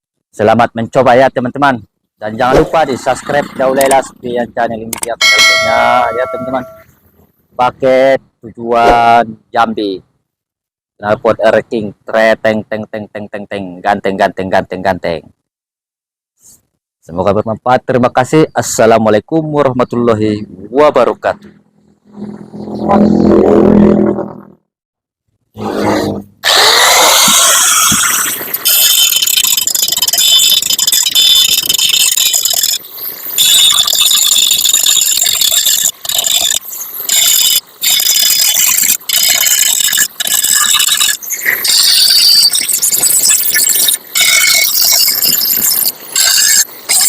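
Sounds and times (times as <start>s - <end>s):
power tool whining on metal: 26.4s - 32.4s.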